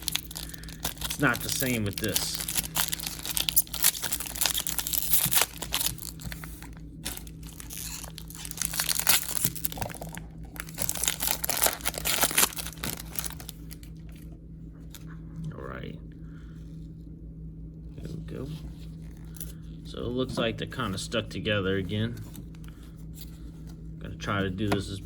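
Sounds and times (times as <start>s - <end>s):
wrapper crinkling and tearing: 0.0s - 14.2s.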